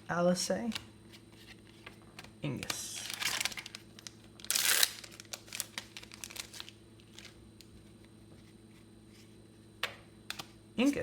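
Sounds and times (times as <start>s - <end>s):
foil pack tearing and crinkling: 2.9s - 7.4s.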